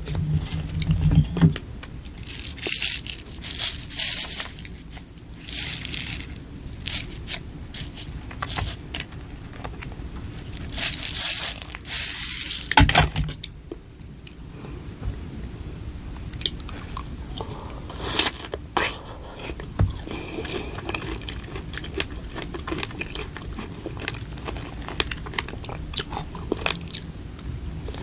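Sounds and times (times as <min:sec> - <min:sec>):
plastic packaging crinkling: 0:02.1 - 0:13.2.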